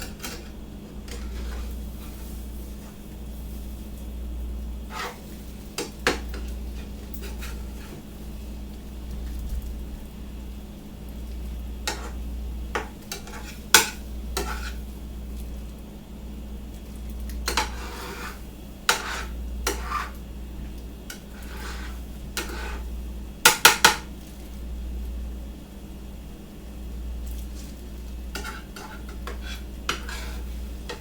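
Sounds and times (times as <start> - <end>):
utensil scraping a pan: 0.0 - 3.6, 4.8 - 8.1, 11.8 - 14.9, 17.4 - 20.2, 21.0 - 22.9, 27.4 - 31.0
steady low hum: 0.0 - 31.0
sharp knocks against pan: 23.5 - 24.1.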